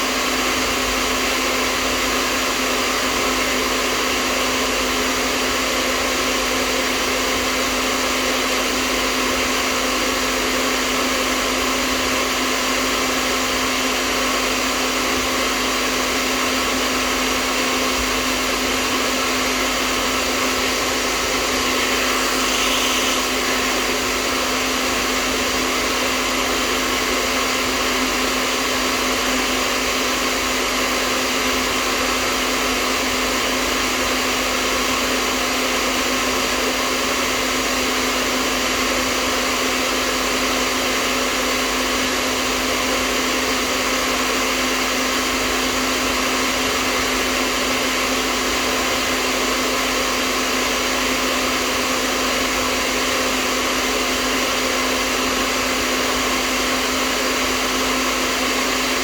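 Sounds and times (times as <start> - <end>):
hair dryer blowing air: 0.0 - 59.0
motor hum: 18.0 - 25.2.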